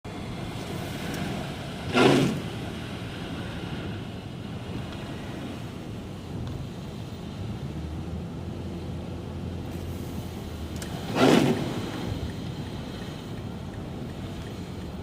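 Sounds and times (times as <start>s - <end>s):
car driving on highway: 0.1s - 15.0s.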